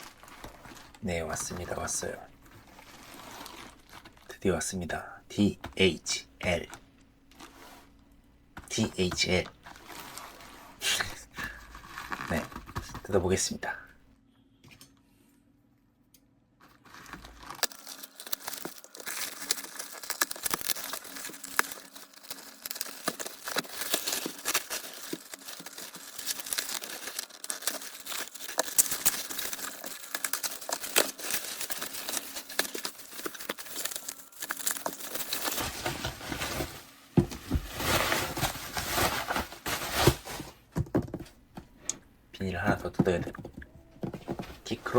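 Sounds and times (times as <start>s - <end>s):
plastic wrapping being torn open: 0.0s - 4.3s, 16.8s - 40.4s.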